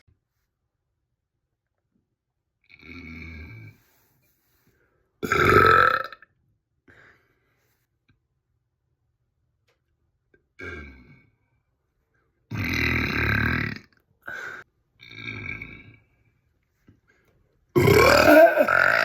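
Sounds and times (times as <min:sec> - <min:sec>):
person burping: 0:05.2 - 0:06.2, 0:12.5 - 0:13.8, 0:17.8 - 0:19.0.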